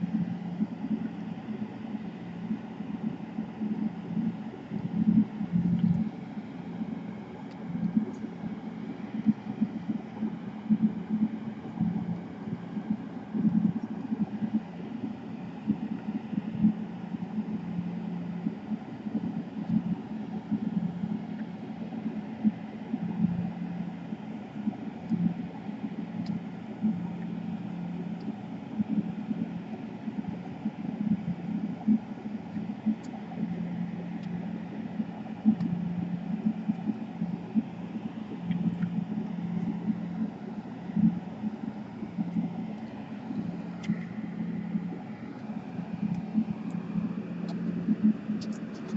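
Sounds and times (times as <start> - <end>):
low hum with uneven rumble: 0.0 - 48.9
faint clicks: 42.3 - 44.2, 44.9 - 48.9.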